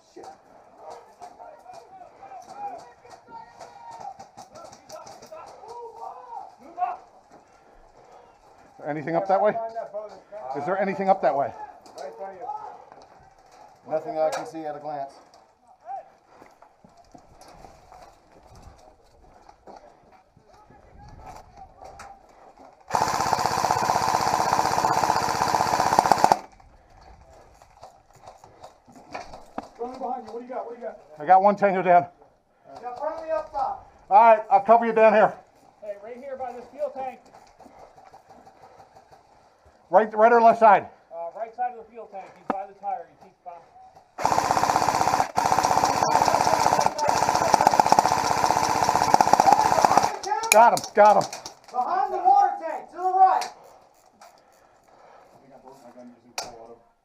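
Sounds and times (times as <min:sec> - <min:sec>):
airsoft gun full-auto burst: 0:22.9 - 0:26.5, 0:44.2 - 0:51.3.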